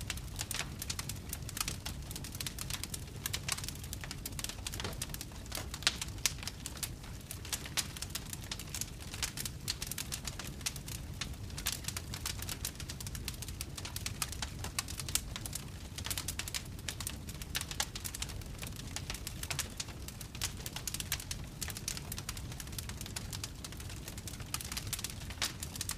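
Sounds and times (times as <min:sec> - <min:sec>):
wood fire crackling: 0:00.0 - 0:25.9.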